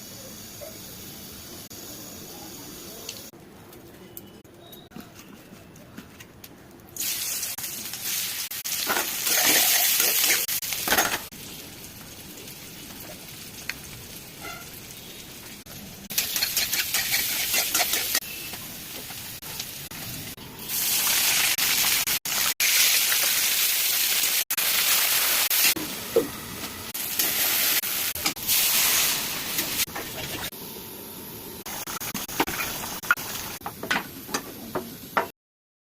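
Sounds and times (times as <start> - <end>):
food sizzling in hot oil: 7.0 - 26.0, 26.9 - 30.5.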